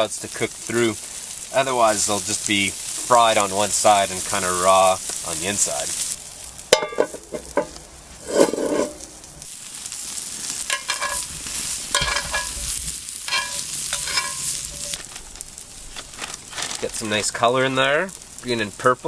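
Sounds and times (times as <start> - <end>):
sprouts sizzling in a frying pan: 0.0 - 19.0
metal clinks against a pan: 6.8 - 7.6, 10.7 - 11.3, 11.9 - 12.6, 13.3 - 15.0.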